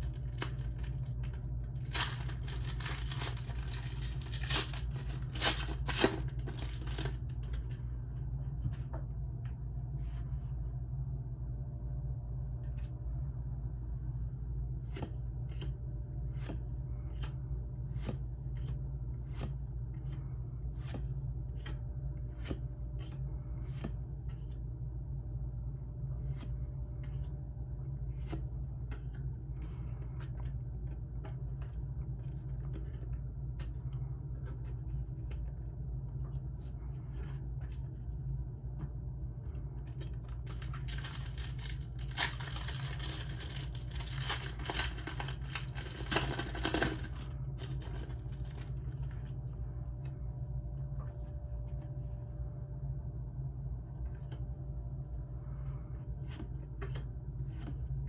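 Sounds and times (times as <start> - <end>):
wrapper crinkling and tearing: 0.0 - 7.2, 40.4 - 49.1
steady low hum: 0.0 - 58.0.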